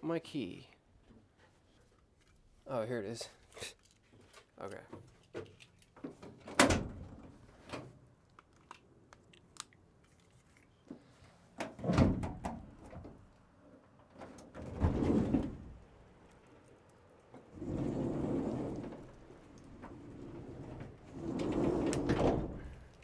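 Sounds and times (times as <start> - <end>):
van door banging: 11.8 - 12.7.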